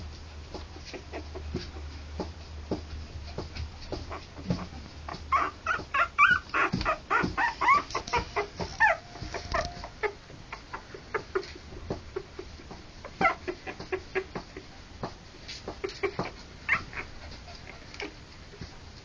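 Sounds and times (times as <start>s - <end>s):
puppies whimpering: 4.1s - 11.7s, 13.1s - 14.7s, 15.8s - 18.2s.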